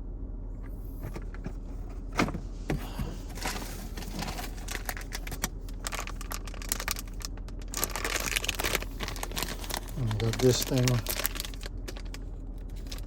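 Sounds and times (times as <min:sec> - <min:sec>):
packaging rustling: 0:02.8 - 0:13.0.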